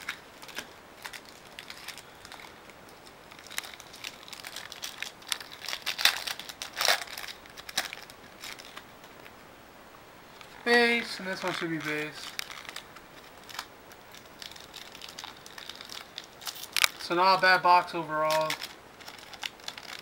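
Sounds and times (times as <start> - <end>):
card pack wrapper crinkling: 0.0 - 9.4, 10.3 - 20.0
cards being handled: 10.4 - 17.2, 18.2 - 20.0.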